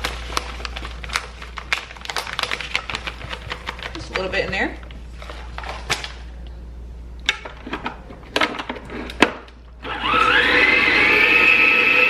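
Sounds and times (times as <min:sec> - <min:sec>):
electric mixer motor whining: 0:09.8 - 0:12.0.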